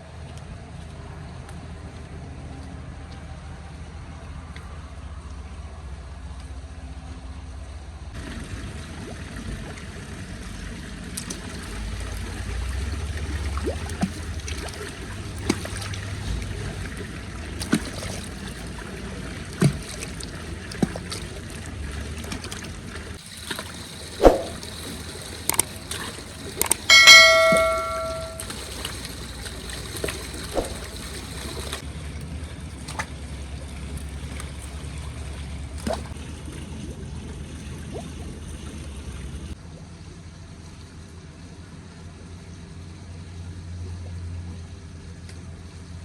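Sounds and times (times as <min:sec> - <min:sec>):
metal pot clang ringing: 0:26.9 - 0:28.5, 0:30.6 - 0:30.9.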